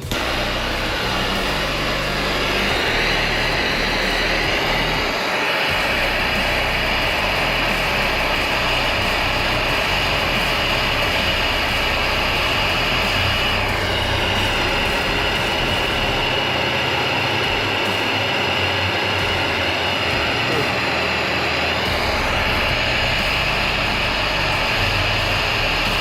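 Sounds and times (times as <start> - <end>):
heating tool rushing: 0.0 - 26.0.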